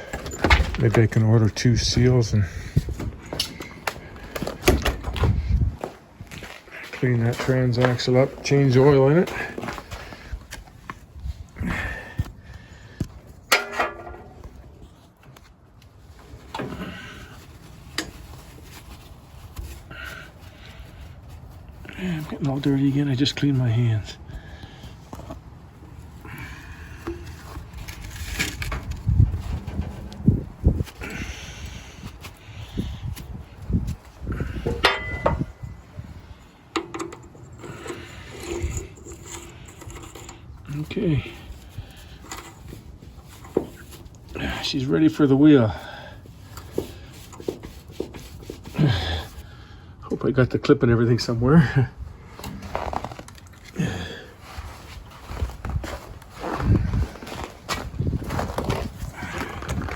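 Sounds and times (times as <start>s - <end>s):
metal parts and tools clicking: 34.7s - 35.6s, 36.7s - 40.6s
metal parts clinking: 34.7s - 35.7s.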